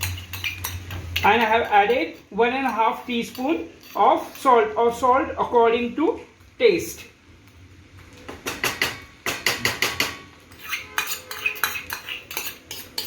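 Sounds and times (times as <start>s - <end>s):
utensil scraping iron wok: 0.0s - 5.5s, 8.6s - 13.0s.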